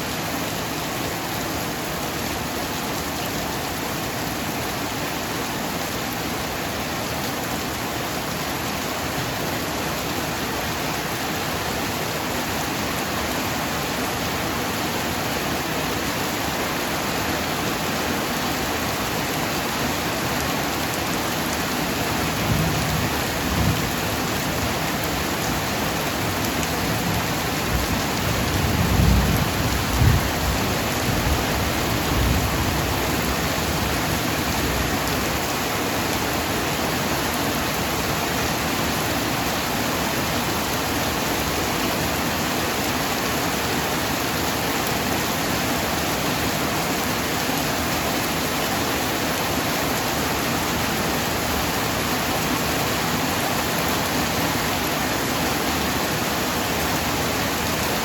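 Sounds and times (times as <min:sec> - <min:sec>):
heavy rain falling: 0:00.0 - 0:58.0
low rumble of thunder: 0:27.7 - 0:31.4.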